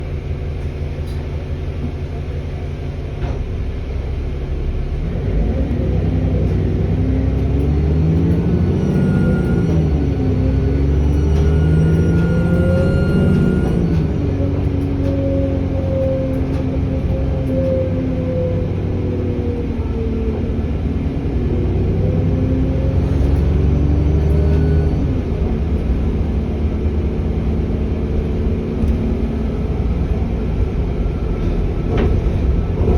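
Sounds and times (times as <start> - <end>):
bus diesel engine pulling away: 0.0 - 32.9
turbocharger whistling: 8.2 - 19.8, 22.8 - 25.2.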